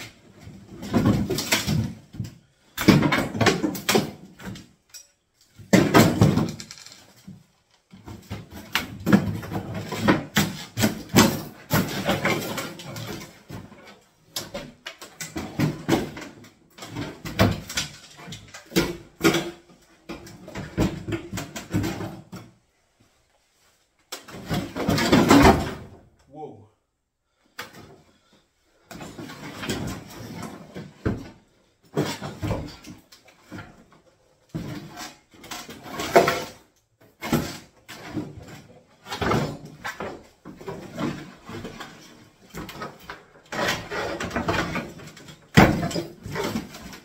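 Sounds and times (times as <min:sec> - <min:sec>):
demolition knocks and bangs: 0:39.0 - 0:47.0.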